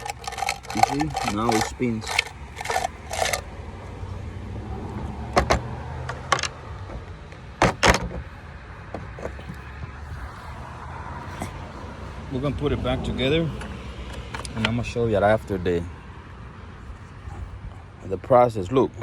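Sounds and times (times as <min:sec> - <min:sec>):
garbage disposal motor humming: 0:00.0 - 0:03.5.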